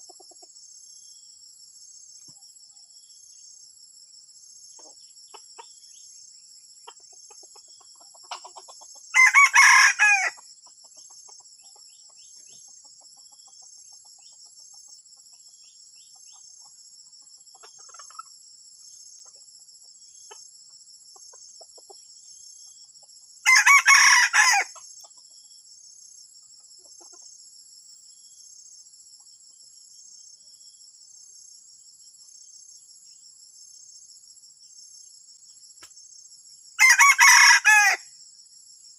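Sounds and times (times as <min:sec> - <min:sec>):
high-pitched insect chorus: 0:00.0 - 0:38.9
rooster crowing: 0:09.1 - 0:10.4, 0:23.4 - 0:24.8, 0:36.8 - 0:38.1.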